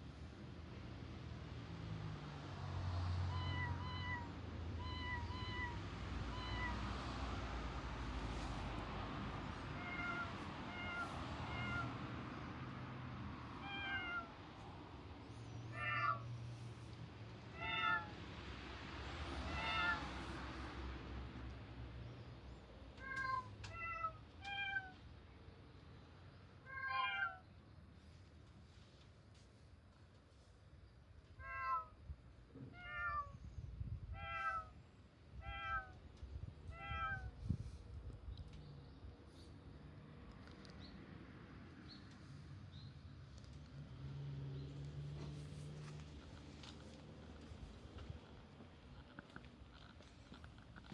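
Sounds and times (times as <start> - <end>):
recorded cat meows from phone: 3.3 - 6.9, 9.7 - 11.9, 13.6 - 14.3, 17.5 - 18.2, 19.4 - 20.1, 23.0 - 25.0, 26.6 - 27.4, 31.4 - 32.0, 32.6 - 33.4, 34.1 - 34.8, 35.4 - 36.0, 36.7 - 37.4.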